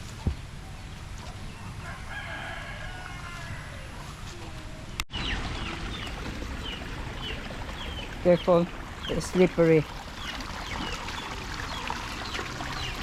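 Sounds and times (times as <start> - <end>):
rural background: 0.0 - 13.0
birds chirping: 5.1 - 13.0.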